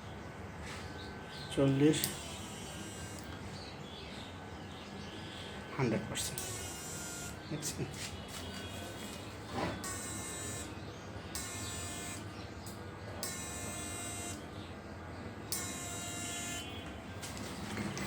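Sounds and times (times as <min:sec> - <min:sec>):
inverter low hum: 0:00.0 - 0:18.0
high-pitched electric buzz: 0:01.7 - 0:03.4, 0:06.4 - 0:07.4, 0:11.4 - 0:12.3, 0:13.2 - 0:14.4, 0:15.5 - 0:16.8.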